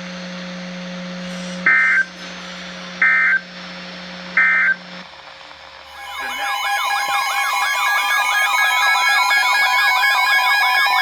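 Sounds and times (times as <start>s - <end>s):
warbling alarm tone: 4.4s - 4.8s, 5.7s - 11.0s
screeching digital bursts: 5.8s - 11.0s.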